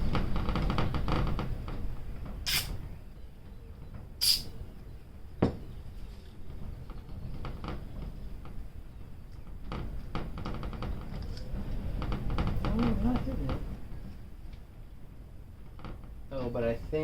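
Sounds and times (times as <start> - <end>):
metal bit clicking and scraping: 2.5 - 2.8.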